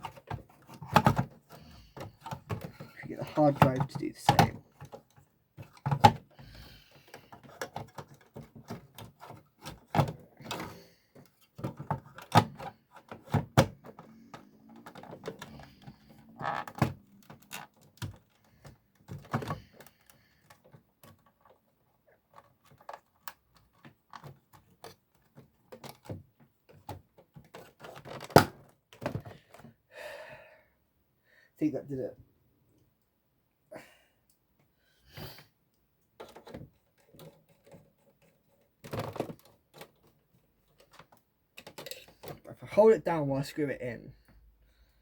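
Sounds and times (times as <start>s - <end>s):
plastic and metal parts clicking: 36.2s - 42.5s.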